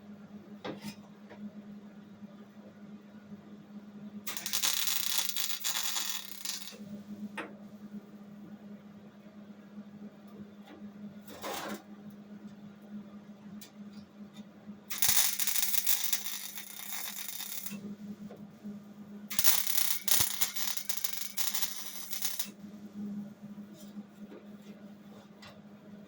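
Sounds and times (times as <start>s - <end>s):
welding arc crackling: 4.3s - 6.8s, 14.9s - 17.8s, 19.3s - 22.5s
steady hum: 12.0s - 26.0s.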